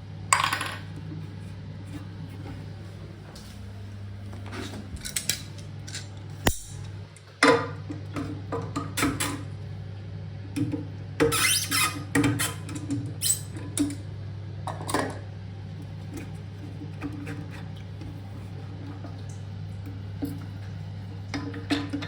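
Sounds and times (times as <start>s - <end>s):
steady low hum: 0.0s - 7.2s.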